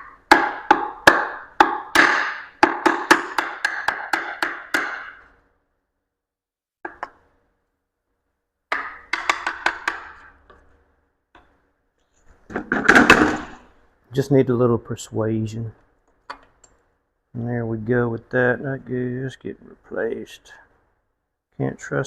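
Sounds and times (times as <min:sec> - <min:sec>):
hammer tapping on metal: 0:00.3 - 0:05.2.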